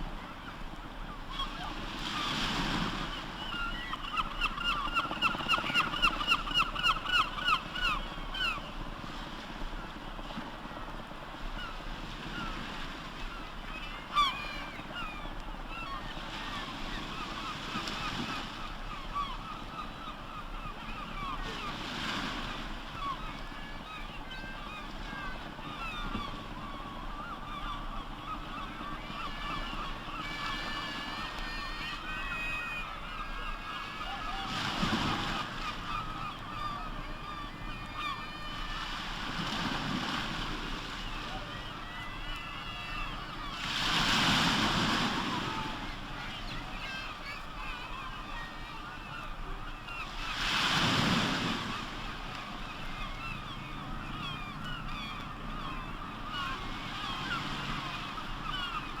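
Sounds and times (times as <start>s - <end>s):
sea noise: 0.0s - 59.0s
flock of birds calling: 22.5s - 59.0s.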